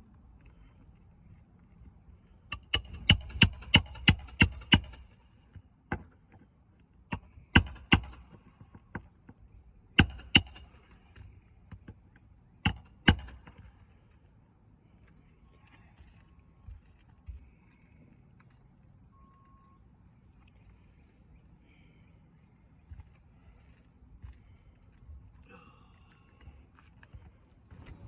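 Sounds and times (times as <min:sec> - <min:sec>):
hammer striking roofing nails: 0:02.5 - 0:05.1, 0:07.1 - 0:08.4, 0:10.0 - 0:10.8, 0:12.7 - 0:13.7.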